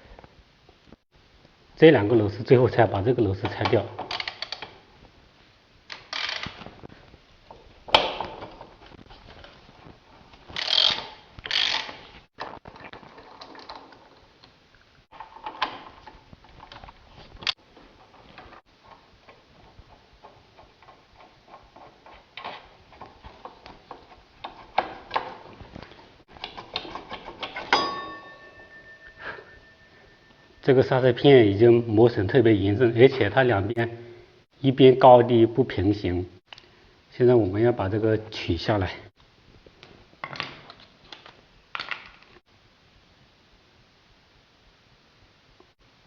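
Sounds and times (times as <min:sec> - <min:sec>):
ratchet rasping: 0:10.6 - 0:12.0
hand tools clinking on metal: 0:26.6 - 0:30.2.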